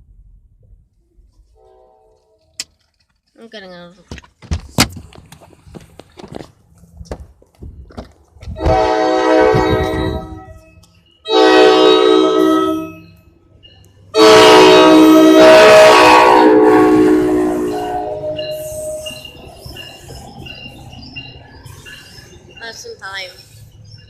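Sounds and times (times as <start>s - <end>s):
train air horn blasts: 1.5s - 2.4s, 8.6s - 10.7s, 11.3s - 13.1s, 14.1s - 19.2s.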